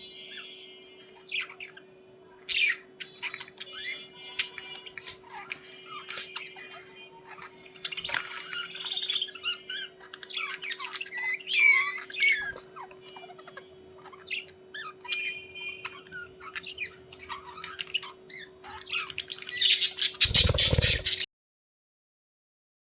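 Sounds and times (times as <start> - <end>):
budgerigars chattering: 7.7 - 21.2.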